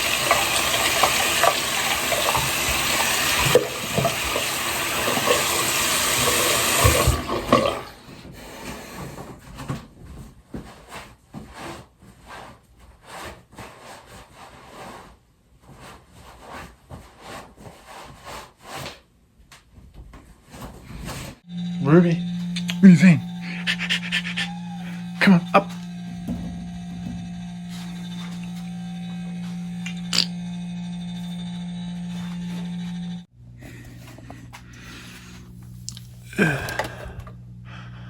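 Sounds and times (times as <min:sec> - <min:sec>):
water running hard: 0:00.0 - 0:08.1.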